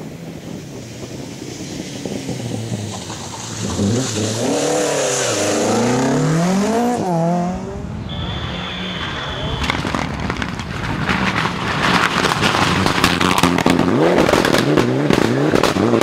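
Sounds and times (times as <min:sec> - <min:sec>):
tyres hissing on wet road: 0:00.0 - 0:06.4
rally car engine revving: 0:00.4 - 0:16.0
high whistle: 0:08.0 - 0:09.9.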